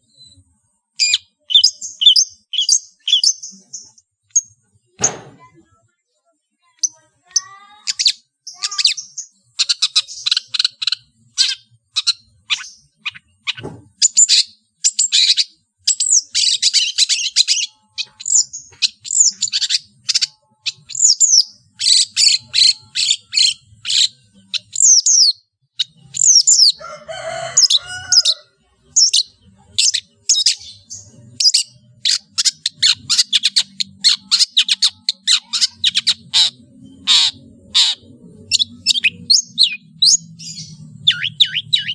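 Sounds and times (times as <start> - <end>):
harsh bird chatter: 6.7 - 41.9
shrike singing: 14.9 - 41.9
bird chirps and whistles: 41.0 - 41.9.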